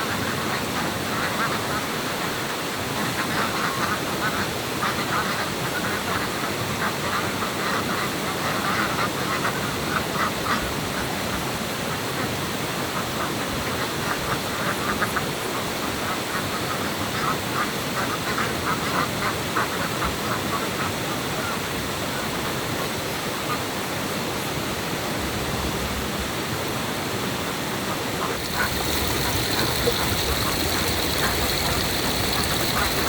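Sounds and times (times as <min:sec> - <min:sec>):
ducks quacking: 0:28.2 - 0:33.0
stream water rushing: 0:28.4 - 0:33.0.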